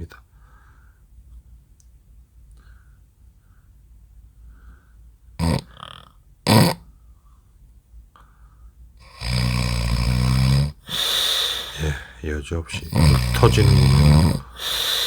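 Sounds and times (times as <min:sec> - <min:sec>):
man snoring: 0:05.4 - 0:06.8, 0:09.1 - 0:15.0
loud snorts: 0:05.4 - 0:06.9, 0:09.1 - 0:15.0.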